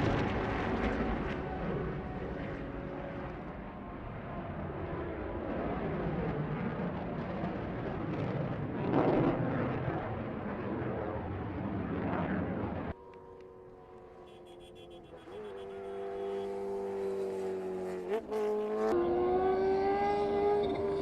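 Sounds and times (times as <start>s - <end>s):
high-revving vehicle engine: 14.3s - 21.0s.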